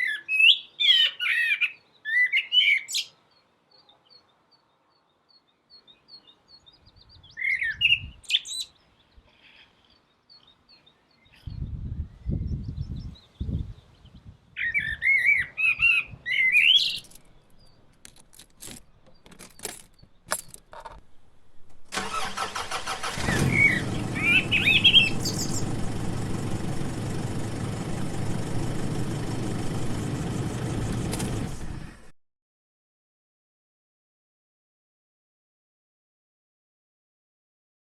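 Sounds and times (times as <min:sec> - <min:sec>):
birds chirping: 0:00.0 - 0:21.2, 0:22.0 - 0:32.0
engine starting and running: 0:21.9 - 0:32.1
clicks: 0:30.9 - 0:31.4.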